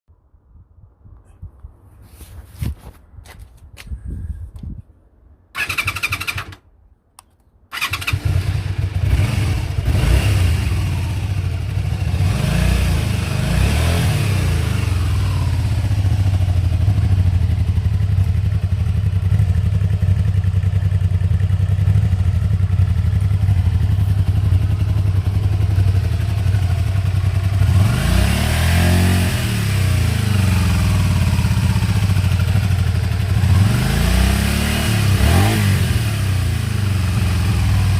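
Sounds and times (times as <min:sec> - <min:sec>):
motorcycle engine cranking: 0:05.6 - 0:06.6, 0:07.7 - 0:08.6
engine revving: 0:07.7 - 0:20.0, 0:21.4 - 0:37.9
motorcycle engine idling: 0:07.8 - 0:13.4, 0:14.7 - 0:28.1, 0:29.6 - 0:33.8, 0:36.0 - 0:37.9.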